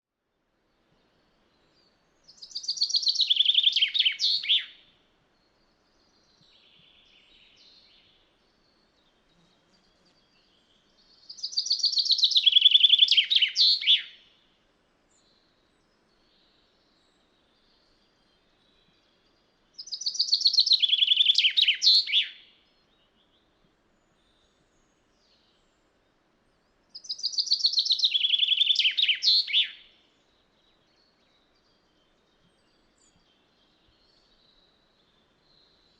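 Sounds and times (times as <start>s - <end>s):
chaffinch singing trill: 2.4s - 4.8s, 11.3s - 14.2s, 19.8s - 22.5s, 27.0s - 29.8s.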